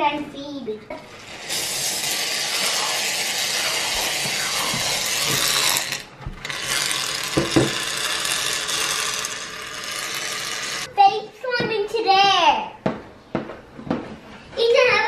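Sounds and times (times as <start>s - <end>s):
aerosol can spraying: 1.2s - 5.9s.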